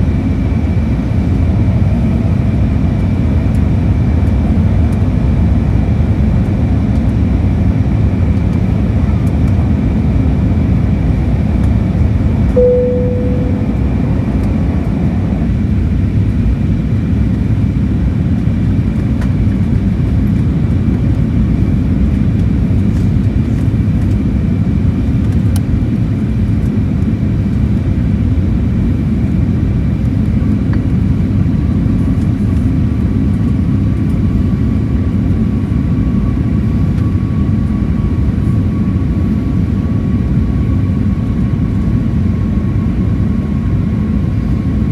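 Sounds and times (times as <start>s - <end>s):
airplane cabin rumble: 7.9s - 15.4s
faint steady tone: 12.6s - 14.3s
short tone: 12.6s - 14.5s
faint steady whine: 12.6s - 14.6s.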